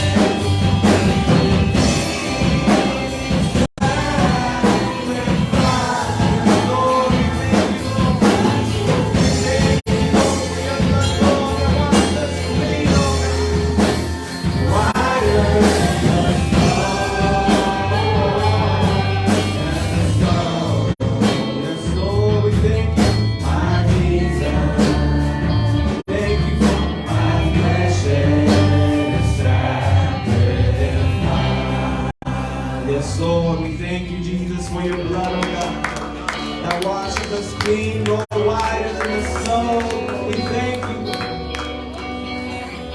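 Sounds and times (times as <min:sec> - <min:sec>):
bass line: 0:00.0 - 0:42.9
worship band and singers: 0:00.0 - 0:42.9.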